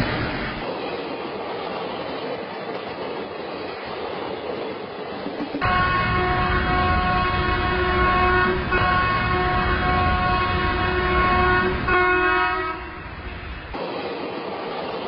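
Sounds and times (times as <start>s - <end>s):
train horn blasts: 5.6s - 13.2s.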